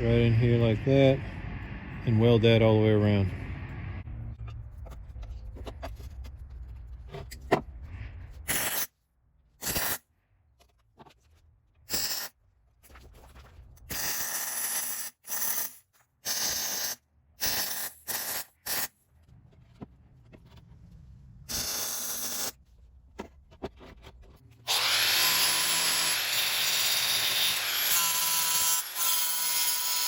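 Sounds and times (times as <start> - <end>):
low rumble: 0.0 - 8.5, 19.3 - 21.5.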